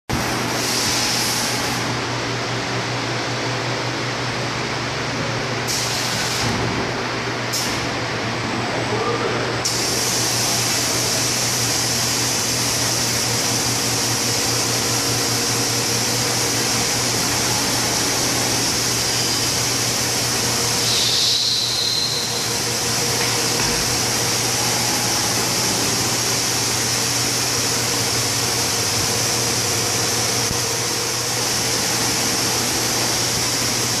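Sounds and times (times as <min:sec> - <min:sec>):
machine hiss: 0:00.4 - 0:02.0, 0:05.7 - 0:06.6, 0:09.6 - 0:34.0
cutting machine humming: 0:12.6 - 0:34.0.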